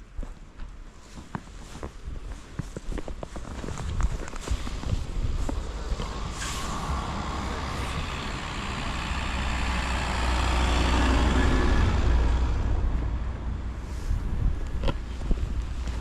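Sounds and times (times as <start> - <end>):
steady low rumble: 2.0 - 16.0
vehicle driving past: 5.6 - 14.0.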